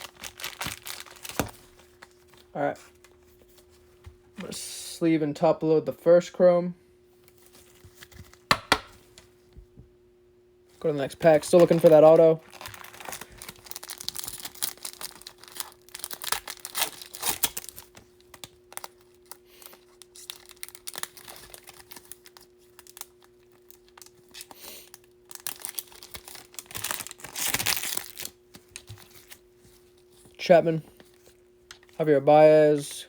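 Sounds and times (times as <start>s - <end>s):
wrapper tearing and crinkling: 0.0s - 2.4s, 11.2s - 29.4s.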